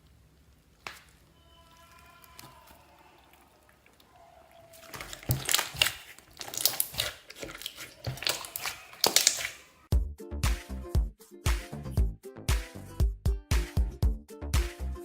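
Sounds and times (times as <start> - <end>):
slime squished by hand: 0.7 - 9.8
dance music with a beat: 12.5 - 14.8.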